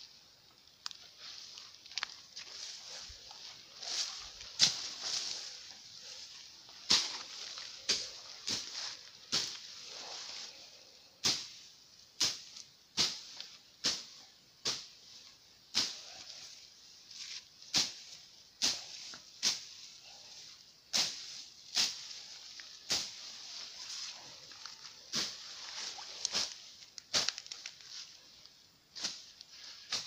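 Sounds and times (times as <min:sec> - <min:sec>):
footsteps on stony trail: 0:00.8 - 0:09.6.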